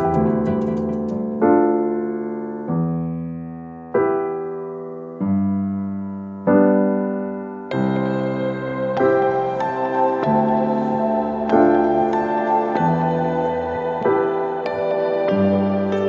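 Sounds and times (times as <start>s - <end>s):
slow keyboard chords: 0.0s - 3.9s, 7.7s - 16.0s.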